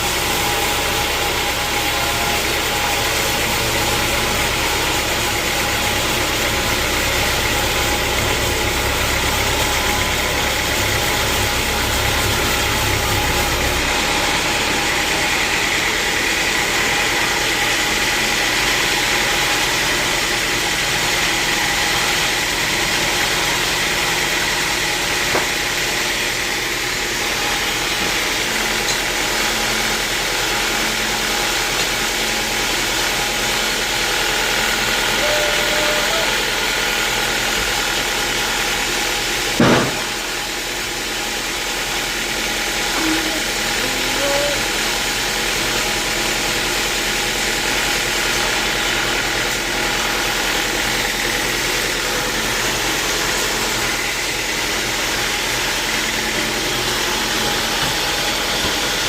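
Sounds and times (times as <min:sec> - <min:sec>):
low hum: 0:00.0 - 0:15.7
high whine: 0:00.0 - 0:33.2, 0:33.8 - 0:38.2
sawmill machinery running: 0:00.0 - 0:59.0.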